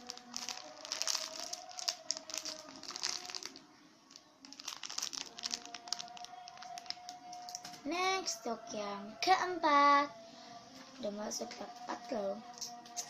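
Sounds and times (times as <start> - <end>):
plastic packaging crinkling: 0.0 - 7.7.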